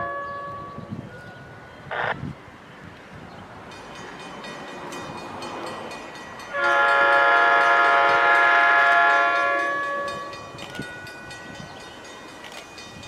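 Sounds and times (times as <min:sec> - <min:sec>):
train rumbling: 0:00.0 - 0:13.0
train air horn blast: 0:06.5 - 0:10.3.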